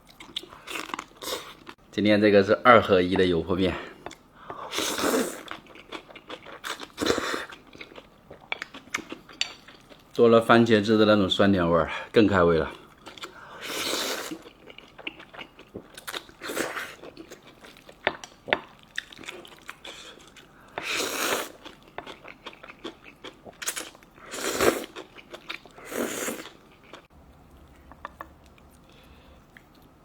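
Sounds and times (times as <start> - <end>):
person chewing and biting: 4.0 - 10.0, 13.0 - 30.0.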